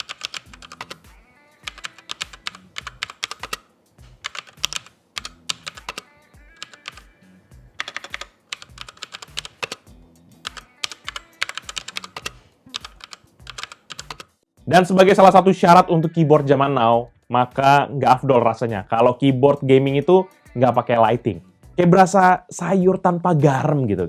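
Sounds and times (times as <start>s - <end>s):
mechanical keyboard key clacks: 0.0s - 1.0s, 1.7s - 3.6s, 4.2s - 6.0s, 6.6s - 7.1s, 7.8s - 9.9s, 10.5s - 14.2s
background music with bass line: 0.0s - 7.9s, 8.6s - 24.0s.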